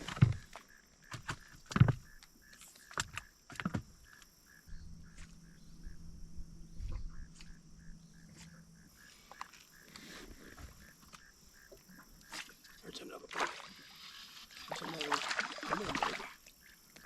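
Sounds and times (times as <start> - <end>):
faint chirping pulse: 0.0 - 17.0
electric trolling motor humming: 4.5 - 12.2, 13.6 - 15.0.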